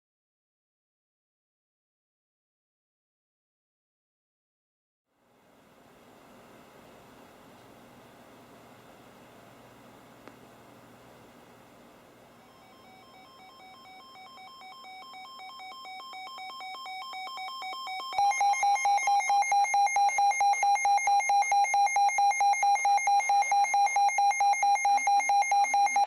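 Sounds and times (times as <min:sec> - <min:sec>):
loud beeping alarm: 0:12.4 - 0:26.0
rapid electronic beeping: 0:12.4 - 0:26.0.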